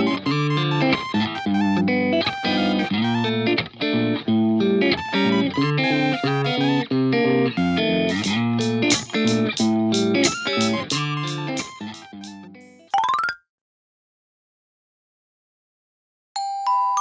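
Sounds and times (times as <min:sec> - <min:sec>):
plucked guitar run: 0:00.0 - 0:12.8
steady bass line: 0:07.6 - 0:12.8.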